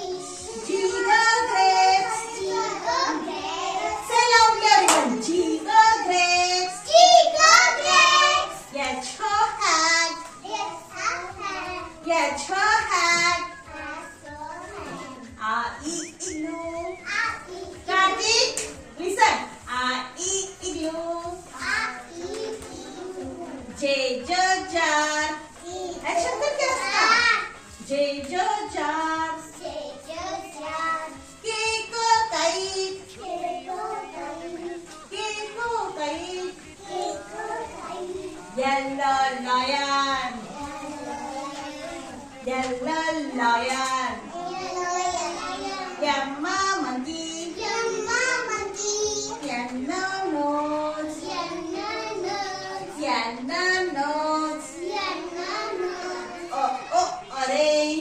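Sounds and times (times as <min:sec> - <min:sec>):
child singing: 0:00.0 - 0:04.1, 0:06.8 - 0:08.6, 0:12.8 - 0:15.3, 0:16.0 - 0:17.9, 0:21.3 - 0:23.6, 0:29.3 - 0:31.3, 0:32.5 - 0:38.6, 0:40.3 - 0:42.4, 0:44.2 - 0:46.0, 0:47.4 - 0:53.0, 0:54.0 - 0:57.3
light musical backing: 0:00.0 - 0:58.0
child singing a chant: 0:33.0 - 0:34.8, 0:36.2 - 0:38.6, 0:40.4 - 0:42.4, 0:44.2 - 0:46.0, 0:47.4 - 0:53.0, 0:54.5 - 0:57.3.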